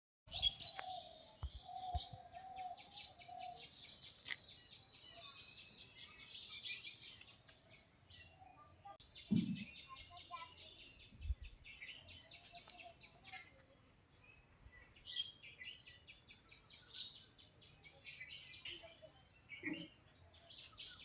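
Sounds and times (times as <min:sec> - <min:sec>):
birds chirping and calling: 0:00.3 - 0:21.0
low thud: 0:09.3 - 0:09.7.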